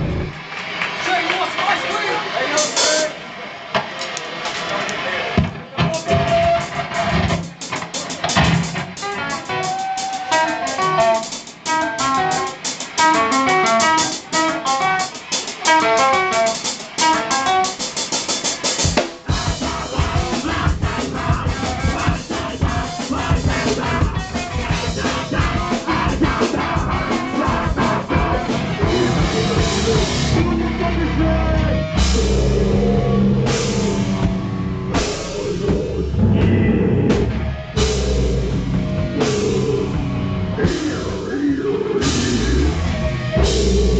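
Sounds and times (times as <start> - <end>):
guitar riff: 0.0 - 0.4, 8.0 - 17.8, 19.3 - 43.9
rock band playing: 0.0 - 43.9.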